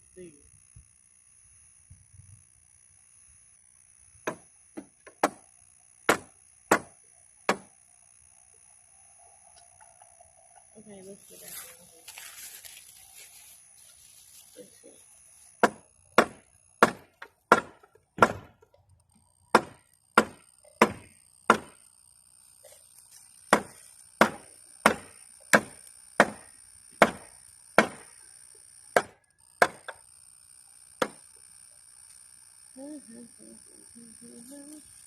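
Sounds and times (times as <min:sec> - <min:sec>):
knocks on wooden board: 0:04.2 - 0:05.4, 0:06.1 - 0:06.9, 0:15.6 - 0:18.6, 0:19.5 - 0:21.8, 0:29.0 - 0:30.0.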